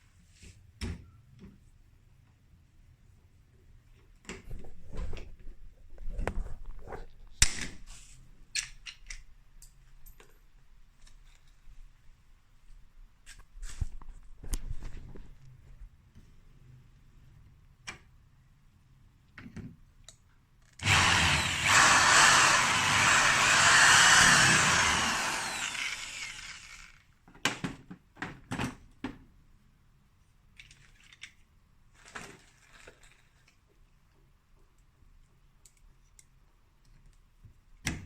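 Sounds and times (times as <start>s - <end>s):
power drill running: 20.8s - 27.0s.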